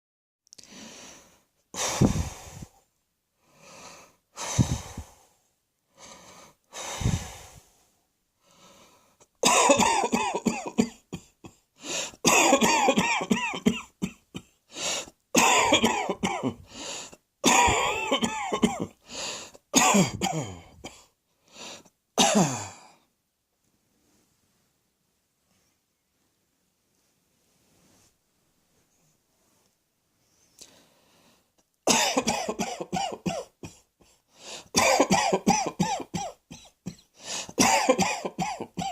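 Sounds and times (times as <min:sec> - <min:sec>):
person breathing: 0:00.6 - 0:09.3, 0:11.8 - 0:12.2, 0:14.7 - 0:15.2, 0:16.6 - 0:17.2, 0:19.0 - 0:19.7, 0:20.6 - 0:22.0, 0:30.2 - 0:31.6, 0:34.0 - 0:34.8, 0:37.1 - 0:37.6
person coughing hoarsely: 0:09.4 - 0:11.6, 0:12.2 - 0:14.6, 0:15.4 - 0:16.7, 0:17.4 - 0:19.0, 0:19.8 - 0:21.0, 0:22.2 - 0:23.0, 0:31.9 - 0:33.9, 0:34.7 - 0:38.9.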